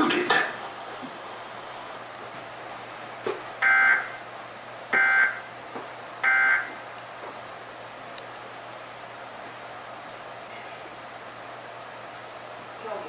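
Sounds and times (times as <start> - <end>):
two-tone digital data bursts: 5.0 - 5.4.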